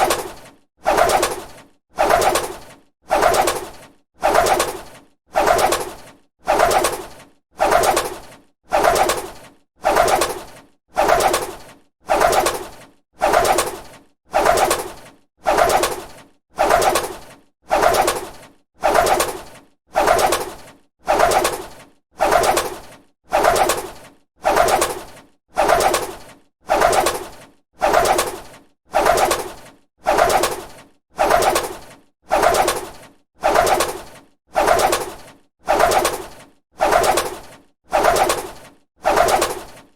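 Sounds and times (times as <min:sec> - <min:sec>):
bird wings flapping: 0:00.0 - 0:39.9.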